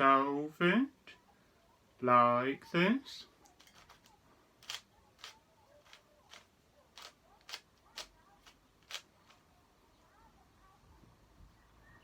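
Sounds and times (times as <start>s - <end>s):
puzzle cube plastic clicks: 3.4s - 9.4s.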